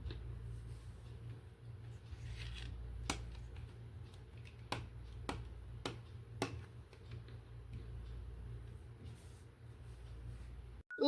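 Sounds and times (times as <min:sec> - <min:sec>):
steady low hum: 0:00.0 - 0:10.8.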